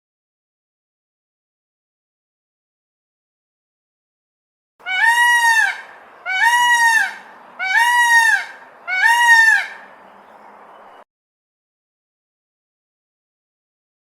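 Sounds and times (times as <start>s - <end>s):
bird calling: 4.8s - 11.0s.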